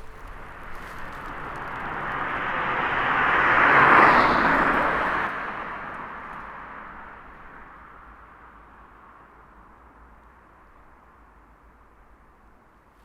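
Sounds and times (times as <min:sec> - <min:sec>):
vehicle driving past: 0:00.8 - 0:07.5.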